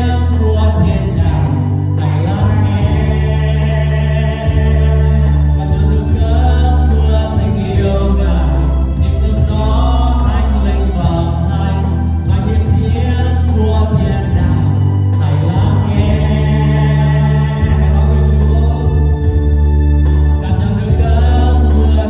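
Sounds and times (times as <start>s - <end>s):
congregation singing: 0.0s - 22.0s
strong bass: 0.0s - 22.0s
worship band playing: 0.0s - 22.0s
steady drum beat: 15.5s - 21.9s.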